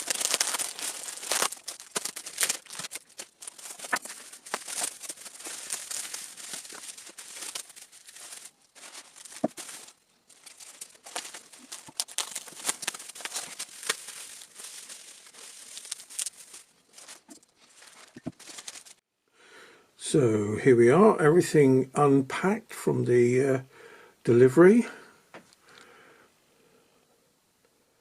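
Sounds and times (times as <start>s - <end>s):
packaging crinkling and rustling: 0.0s - 19.0s.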